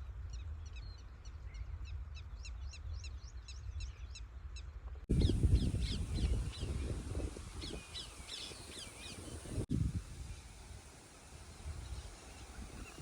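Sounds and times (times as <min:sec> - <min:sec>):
small birds chirping: 0:05.1 - 0:09.7, 0:10.8 - 0:13.0.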